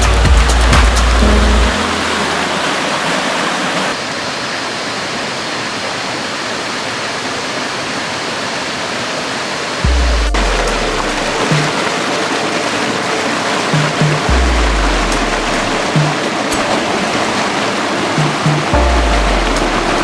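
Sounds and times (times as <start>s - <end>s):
music bass: 0.0s - 2.6s, 9.9s - 11.5s, 14.3s - 15.8s, 18.8s - 20.0s
flowing water: 0.0s - 20.0s.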